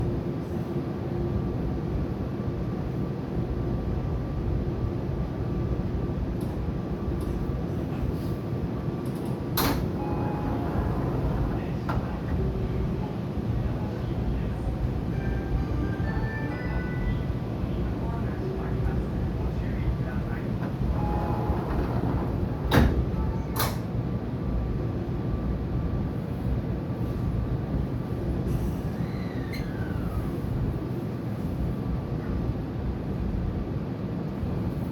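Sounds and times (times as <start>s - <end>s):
low hum of stopped train: 0.0s - 34.9s
sliding train doors operating: 6.2s - 24.6s, 26.3s - 33.3s.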